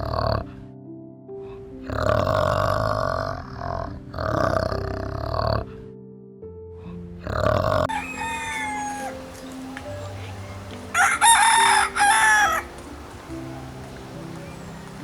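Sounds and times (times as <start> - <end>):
soft background music: 0.0 - 15.0
rooster crowing: 7.9 - 9.4, 10.9 - 12.8.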